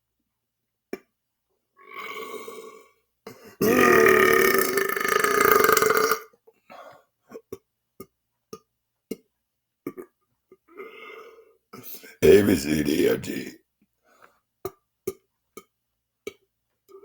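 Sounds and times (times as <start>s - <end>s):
man burping: 3.6s - 6.2s.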